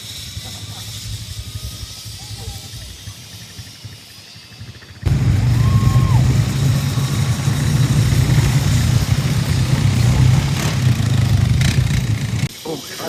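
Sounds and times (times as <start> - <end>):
vehicle engine rumbling: 5.1 - 12.5.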